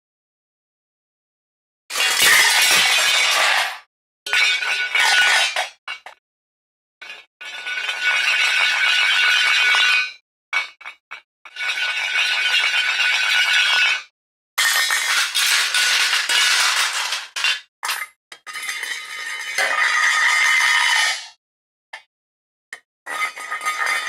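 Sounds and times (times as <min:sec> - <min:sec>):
metal plates and pans crashing: 0:01.9 - 0:06.2, 0:14.6 - 0:21.4, 0:23.1 - 0:24.0.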